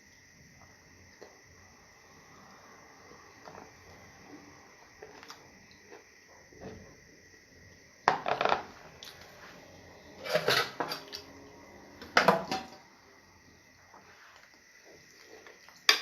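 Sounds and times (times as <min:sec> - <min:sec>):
clinking and scraping on dish: 0:10.2 - 0:11.2.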